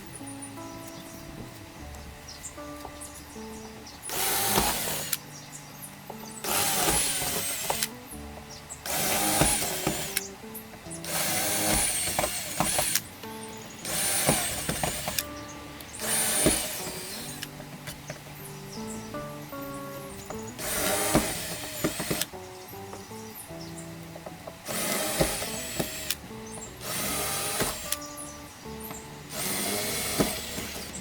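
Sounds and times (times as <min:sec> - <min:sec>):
background music: 0:00.0 - 0:31.0
cordless drill whining: 0:04.0 - 0:05.3, 0:06.4 - 0:18.2, 0:18.8 - 0:22.4, 0:24.2 - 0:31.0.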